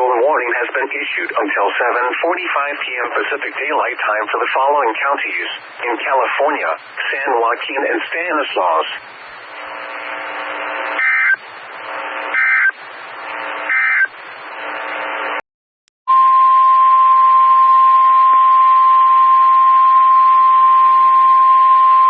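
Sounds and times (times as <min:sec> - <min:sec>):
receiver hiss: 0:00.0 - 0:15.4
digital data tone bursts: 0:11.0 - 0:11.4, 0:12.3 - 0:12.8, 0:13.7 - 0:14.2
steady warning alarm tone: 0:11.0 - 0:11.4, 0:12.3 - 0:12.8, 0:13.7 - 0:14.2.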